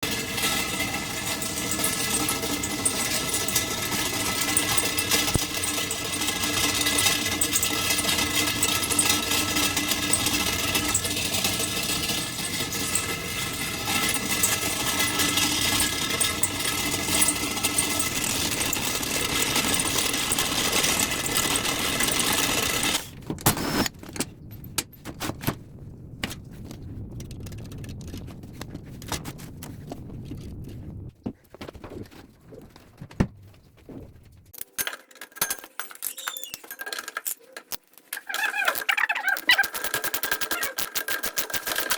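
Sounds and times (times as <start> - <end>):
fridge compressor humming rattle: 0.0 - 23.1
scattered clicks and knocks: 0.0 - 25.6, 26.2 - 32.2, 32.8 - 41.9.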